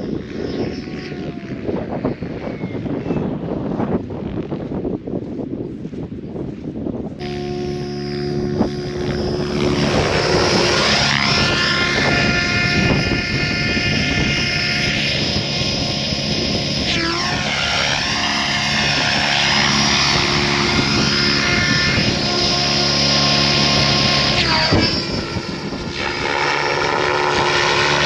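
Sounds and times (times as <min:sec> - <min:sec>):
rc helicopter motor whine: 0:00.0 - 0:04.8, 0:07.2 - 0:28.0.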